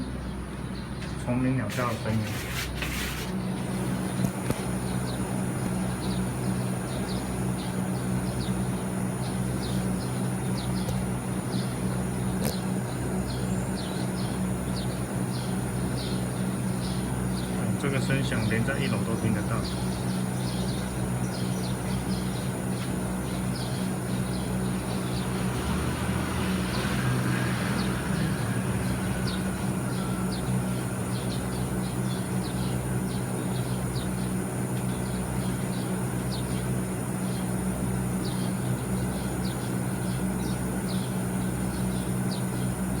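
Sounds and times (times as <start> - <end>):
air conditioner low hum: 0.0 - 43.0
high-pitched electrical whine: 1.2 - 33.8.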